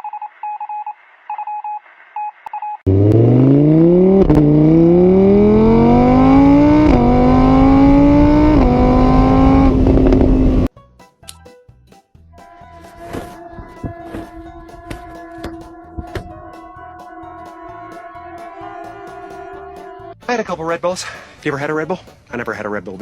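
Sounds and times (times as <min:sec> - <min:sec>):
car engine accelerating hard: 0:02.9 - 0:10.7.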